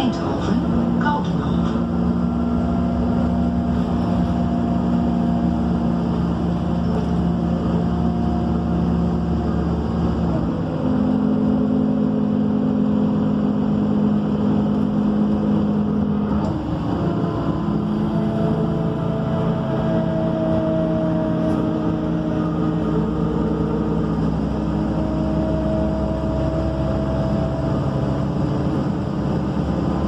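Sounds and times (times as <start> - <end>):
bus engine droning: 0.0 - 30.0.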